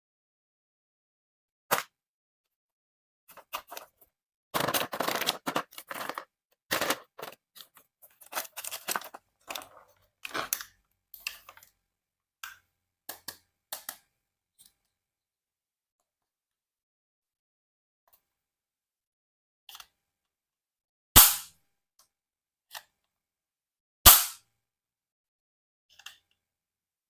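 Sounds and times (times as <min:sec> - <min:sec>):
packaging crinkling and rustling: 0:04.6 - 0:10.7.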